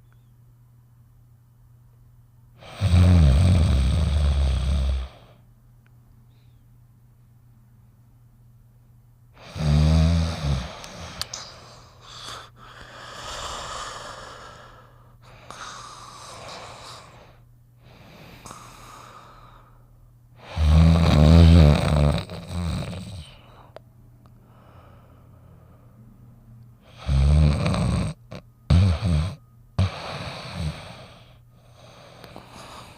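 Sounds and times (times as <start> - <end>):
cartoon dog snoring: 2.6 - 5.3, 9.4 - 11.2, 12.0 - 17.4, 20.4 - 23.4, 26.9 - 31.4
breathy whistling breaths: 10.6 - 20.8, 28.6 - 32.9.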